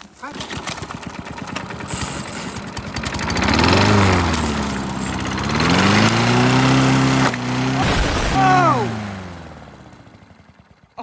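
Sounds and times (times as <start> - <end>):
lawn mower engine revving: 0.0 - 11.0.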